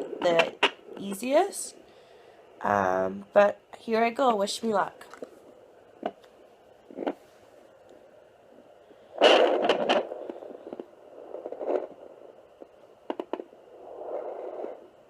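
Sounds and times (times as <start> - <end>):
probe scraping on skin: 0.0 - 1.4, 6.9 - 7.3, 9.1 - 15.0
faint steady hiss: 0.0 - 15.0
doppler speaker crackling: 4.8 - 15.0.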